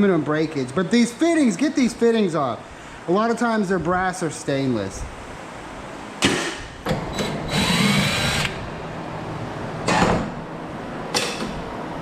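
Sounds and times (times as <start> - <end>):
cordless drill whining: 7.2 - 8.6.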